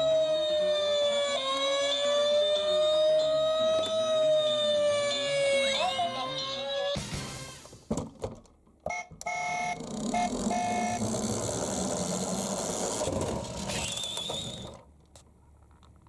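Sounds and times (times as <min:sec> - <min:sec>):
toy short beeps: 0:08.9 - 0:11.0
toy car rushing rattle: 0:09.7 - 0:14.8.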